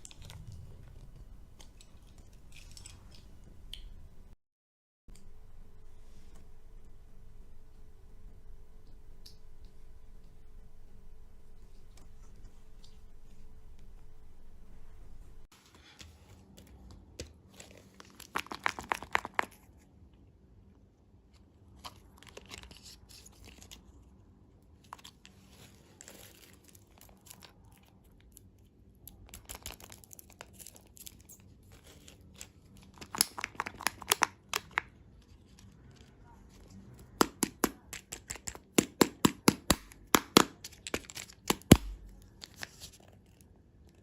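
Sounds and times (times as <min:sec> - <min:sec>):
candy wrappers crinkling: 0:17.5 - 0:19.8, 0:24.9 - 0:36.1, 0:40.0 - 0:44.0.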